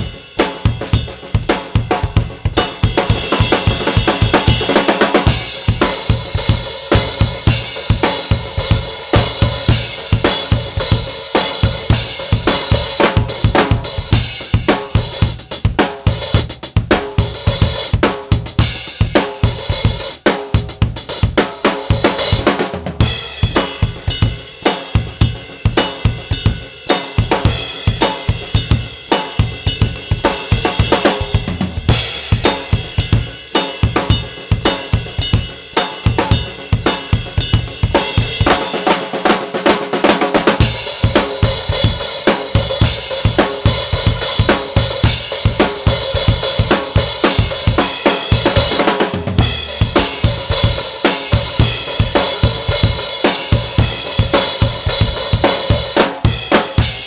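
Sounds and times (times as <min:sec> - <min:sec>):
snare drum: 0:00.0 - 0:25.0, 0:26.9 - 0:35.0, 0:35.8 - 0:57.0
bass drum: 0:00.7 - 0:26.6, 0:27.2 - 0:38.9, 0:40.4 - 0:57.0
cymbals: 0:40.6 - 0:57.0.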